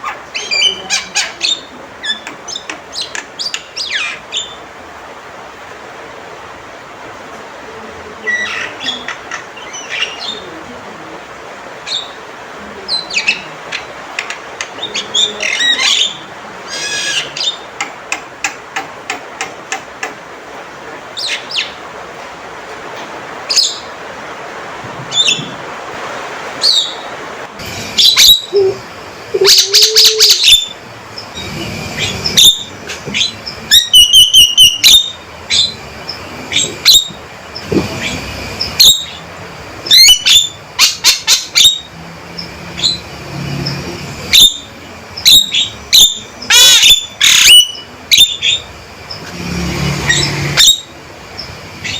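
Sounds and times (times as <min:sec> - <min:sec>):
myna chirps and whistles: 0:28.0 - 0:35.8, 0:39.9 - 0:41.9, 0:44.3 - 0:48.7.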